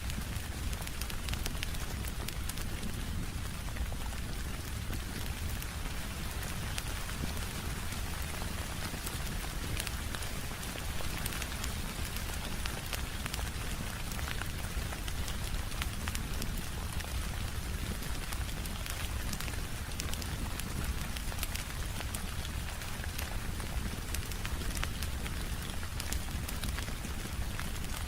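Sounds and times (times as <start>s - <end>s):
steady rain falling: 0.0s - 28.0s
fireplace crackling: 0.1s - 28.0s.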